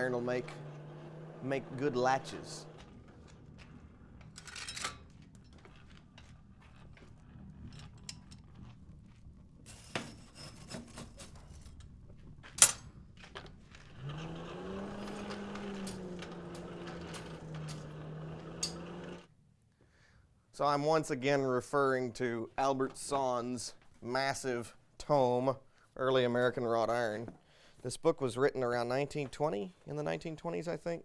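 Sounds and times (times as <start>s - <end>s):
sharp metallic clack: 12.6s - 12.9s.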